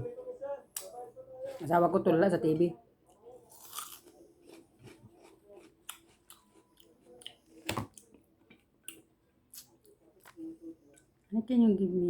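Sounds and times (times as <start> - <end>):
chewing: 3.1 - 11.1.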